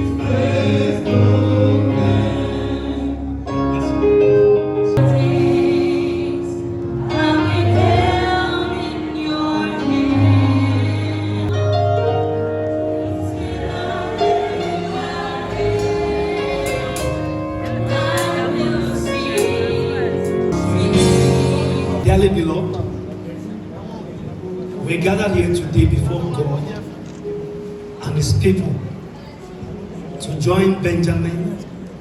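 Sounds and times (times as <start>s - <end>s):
gospel choir singing: 0.0s - 4.1s, 4.9s - 23.1s
low bass line: 1.2s - 8.5s, 15.6s - 24.0s.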